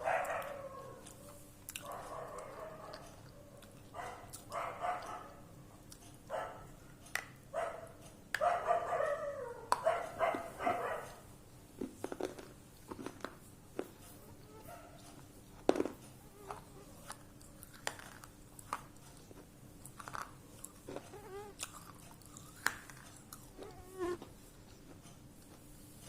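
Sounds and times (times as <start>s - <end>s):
person chewing crunchy food: 0.2s - 5.1s, 11.7s - 14.4s, 15.0s - 25.7s.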